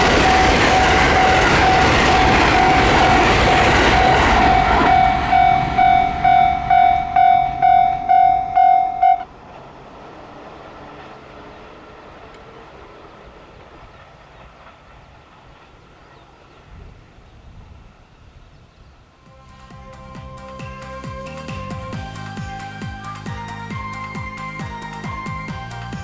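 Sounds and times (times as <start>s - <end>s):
level crossing alarm ringing: 0.0s - 9.3s
passing train: 0.0s - 26.0s
faint outdoor background: 3.6s - 26.0s.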